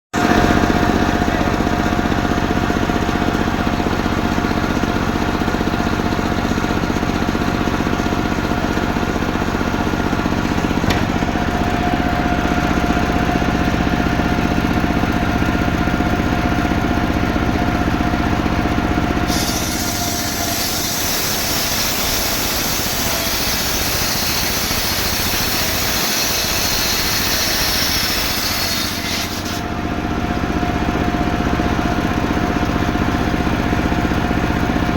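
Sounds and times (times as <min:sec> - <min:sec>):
chainsaw engine running: 0:00.2 - 0:34.9
chainsaw cutting hiss: 0:19.3 - 0:29.6.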